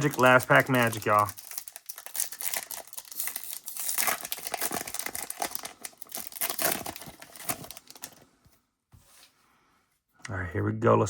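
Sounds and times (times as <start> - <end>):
foil pack tearing and crinkling: 0.0 - 8.2.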